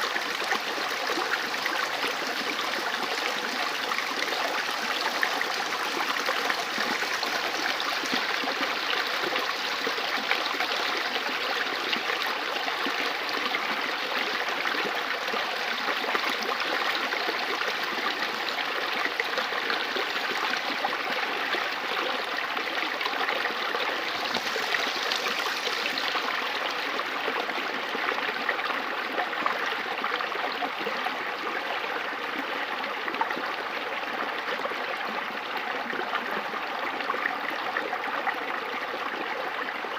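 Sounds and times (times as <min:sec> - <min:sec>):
river water flowing over rocks: 0:00.0 - 0:39.9.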